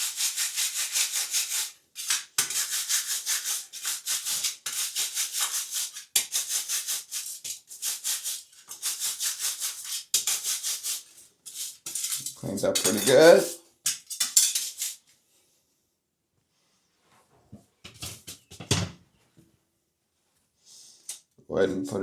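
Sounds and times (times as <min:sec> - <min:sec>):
scrub brush scrubbing: 0:00.0 - 0:13.5.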